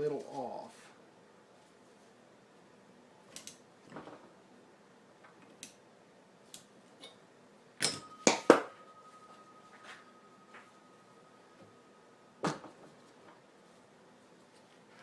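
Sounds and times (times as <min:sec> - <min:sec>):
sharp metal knocks with ringing: 0:07.8 - 0:09.9.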